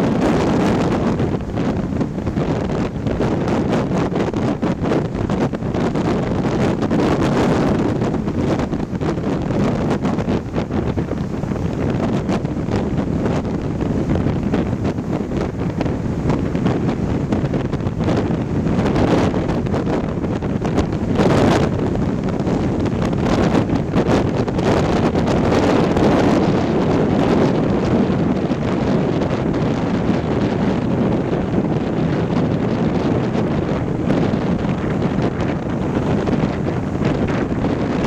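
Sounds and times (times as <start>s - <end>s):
waves washing onto beach: 0.0s - 38.0s
wind buffeting microphone: 0.0s - 38.0s.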